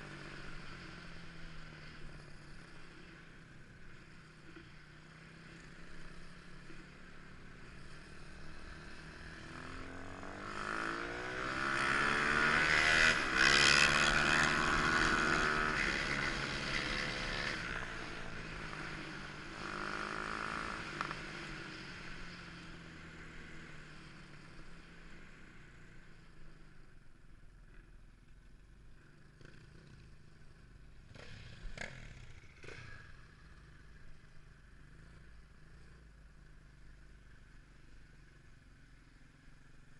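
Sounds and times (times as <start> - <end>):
motorcycle engine passing: 7.8 - 22.6, 31.0 - 33.9.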